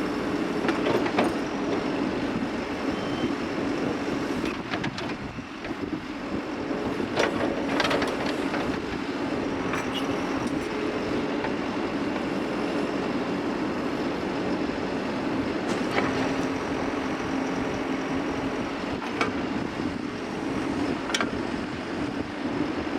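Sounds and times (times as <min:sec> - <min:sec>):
diesel engine running: 0:00.0 - 0:22.9.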